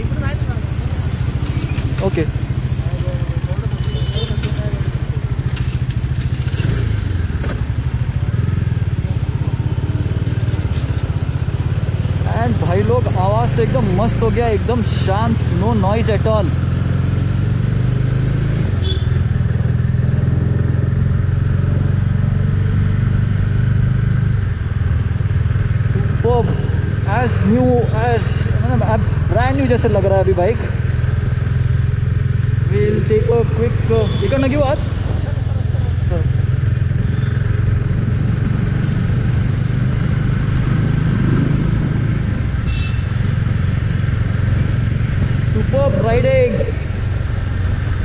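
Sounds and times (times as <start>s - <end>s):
motorcycle engine idling: 0.0s - 12.8s, 24.1s - 38.1s.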